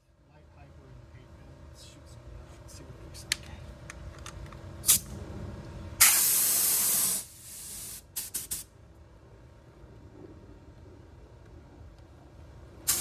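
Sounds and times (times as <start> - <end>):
spray paint blasts: 6.0 - 8.7.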